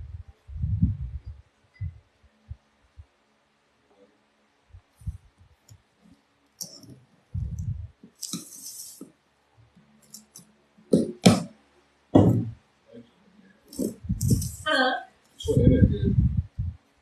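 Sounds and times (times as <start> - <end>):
dull thud: 12.2 - 12.6
loud knocks: 12.2 - 12.6.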